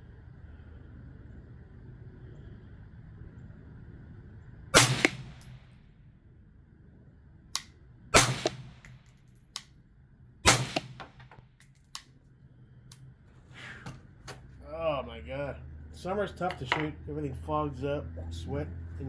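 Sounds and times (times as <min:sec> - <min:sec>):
rifle shots: 0:04.8 - 0:05.7, 0:08.2 - 0:09.2, 0:10.4 - 0:11.3
metallic clicks and clinks: 0:08.8 - 0:09.7, 0:10.8 - 0:12.1.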